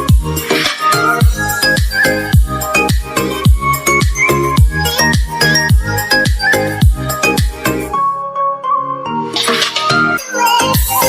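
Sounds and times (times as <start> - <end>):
kick-drum beat: 0.1 - 0.3, 1.2 - 7.6.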